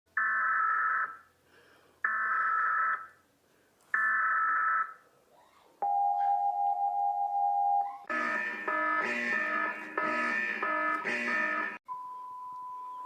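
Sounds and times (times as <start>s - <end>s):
steady attention tone: 5.8s - 13.0s.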